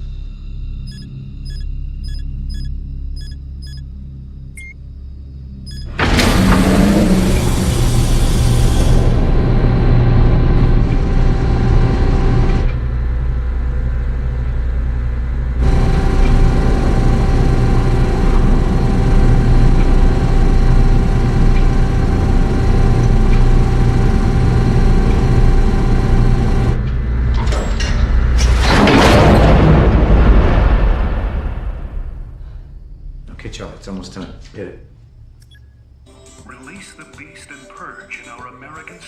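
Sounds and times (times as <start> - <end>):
low rumble: 0.0 - 36.0
tornado warning siren: 5.7 - 14.8, 15.5 - 27.1.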